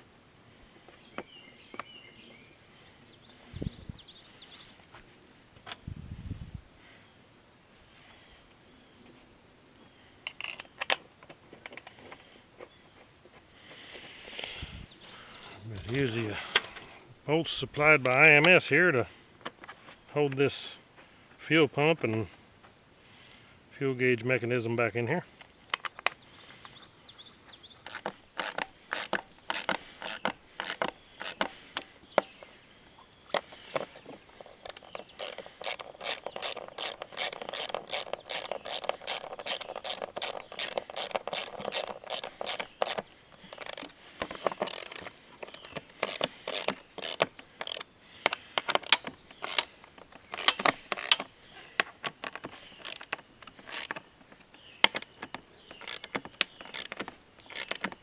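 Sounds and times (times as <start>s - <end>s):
hand ratchet clicking: 27.8s - 31.9s, 34.6s - 54.1s, 54.8s - 58.0s.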